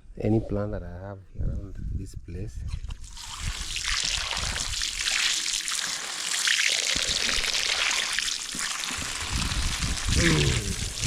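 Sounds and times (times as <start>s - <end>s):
water rushing from garden tap: 3.0s - 11.0s.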